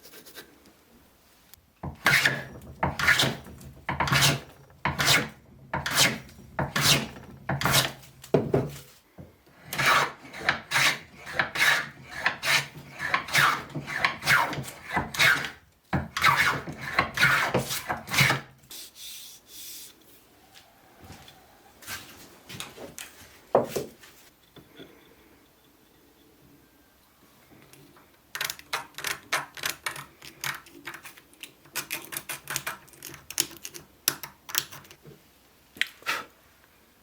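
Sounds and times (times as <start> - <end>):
hand rasp scraping wood: 1.8 - 8.1, 9.5 - 18.5.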